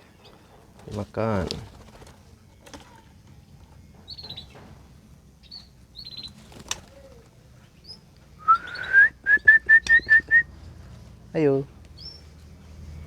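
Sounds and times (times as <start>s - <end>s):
songbirds chirping: 0.0s - 13.0s
wing flutters: 0.3s - 3.2s, 6.0s - 7.5s
short even whistles: 8.4s - 10.5s.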